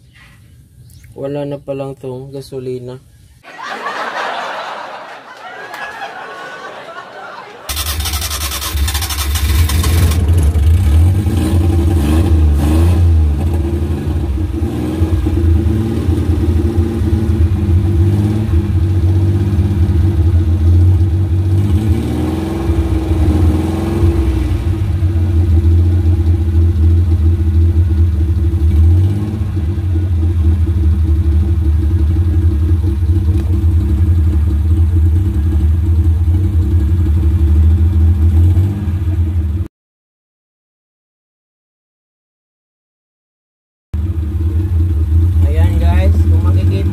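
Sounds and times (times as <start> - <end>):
engine revving: 7.7 - 39.7, 44.0 - 46.9.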